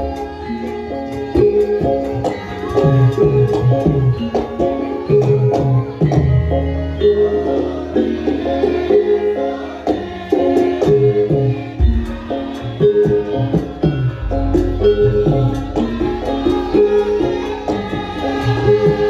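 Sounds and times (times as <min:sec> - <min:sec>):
struck metal-keyed notes: 0:11.0 - 0:19.0.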